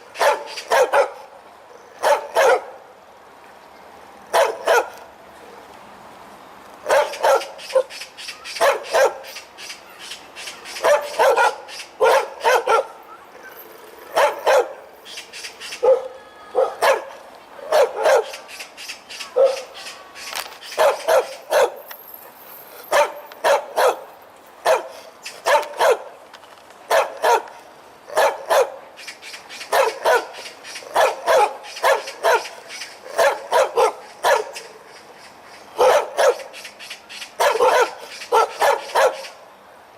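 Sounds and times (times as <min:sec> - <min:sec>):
dog barking: 0:00.2 - 0:01.2, 0:02.0 - 0:02.8, 0:04.3 - 0:05.0, 0:06.8 - 0:07.9, 0:08.6 - 0:09.4, 0:10.8 - 0:13.0, 0:14.1 - 0:14.8, 0:15.8 - 0:18.4, 0:19.4 - 0:19.7, 0:20.8 - 0:21.8, 0:22.9 - 0:26.1, 0:26.9 - 0:27.5, 0:28.1 - 0:28.8, 0:29.7 - 0:34.6, 0:35.8 - 0:36.6, 0:37.4 - 0:39.4.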